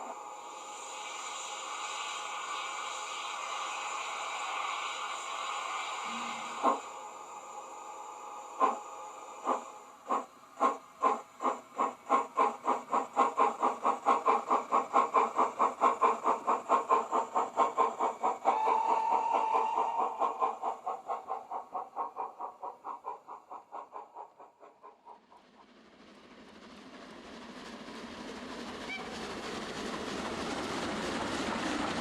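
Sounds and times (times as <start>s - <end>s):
steady hiss: 0.0s - 23.0s
steam locomotive exhaust chuffs: 0.0s - 32.0s
brief steady tone: 6.1s - 6.8s.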